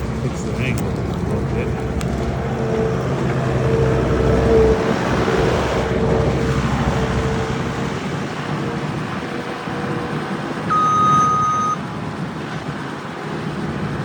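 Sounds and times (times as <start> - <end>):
constant high whine: 0.0 - 14.0
heavy machine engine running: 0.0 - 14.0.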